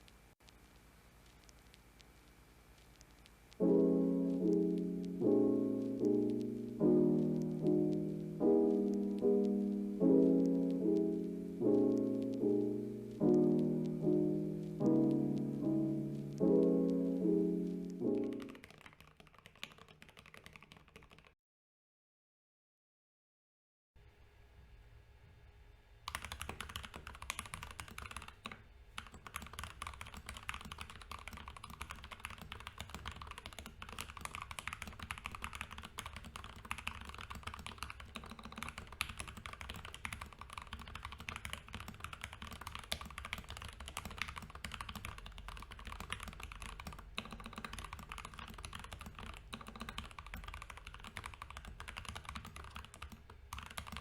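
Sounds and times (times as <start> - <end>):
fast mechanical keyboard typing: 18.1 - 21.4, 26.1 - 54.0.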